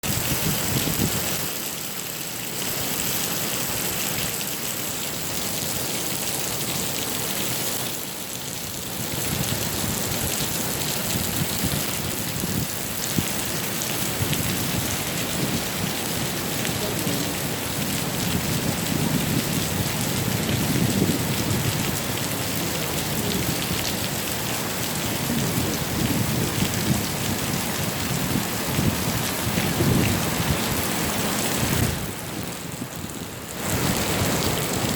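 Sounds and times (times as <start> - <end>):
heavy rain pouring: 0.0 - 34.9.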